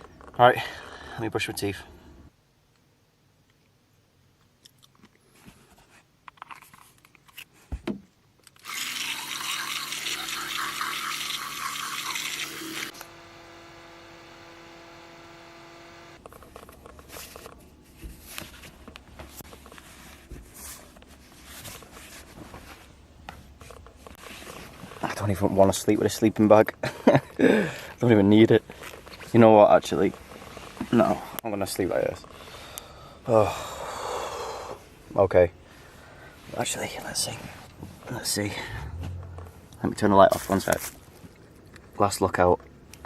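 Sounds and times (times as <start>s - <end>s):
toothbrush scrubbing teeth: 9.1s - 12.9s
steady hum: 11.1s - 21.9s, 37.4s - 40.2s.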